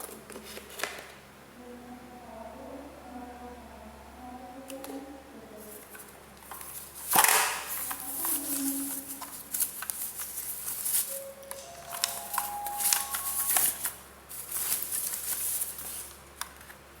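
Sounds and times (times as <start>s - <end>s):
packaging crackling rustle: 5.8s - 16.8s
packaging crinkling: 5.9s - 16.8s.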